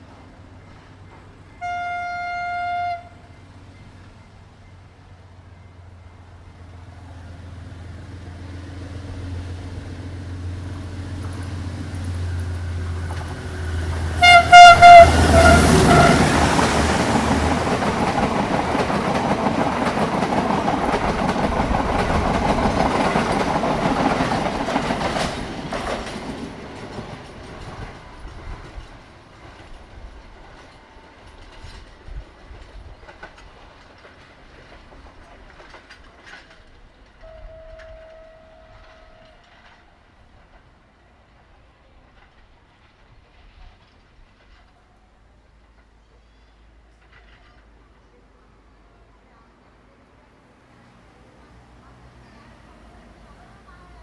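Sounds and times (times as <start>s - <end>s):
diesel train engine humming: 0.0s - 31.4s
train wheels on track: 0.0s - 54.0s
train horn blasts: 1.6s - 3.4s, 14.0s - 16.6s, 37.2s - 39.7s.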